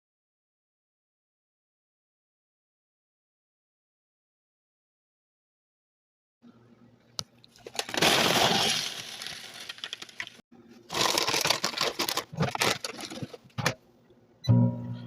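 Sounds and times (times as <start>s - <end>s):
popcorn kernels rattling: 7.6s - 13.5s
packaging crackling: 7.6s - 13.6s.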